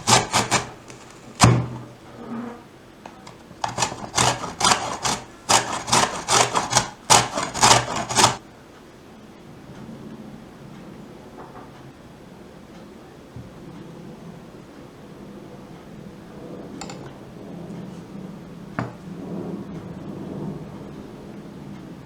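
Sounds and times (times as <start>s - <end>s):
heavy knock: 0.0s - 1.9s.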